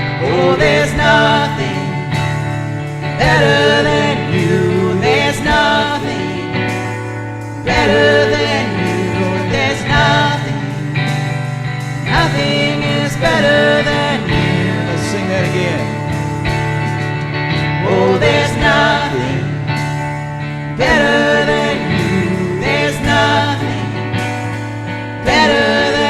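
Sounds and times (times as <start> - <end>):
person singing: 0.0 - 16.7, 17.6 - 26.0
worship band playing: 0.0 - 26.0.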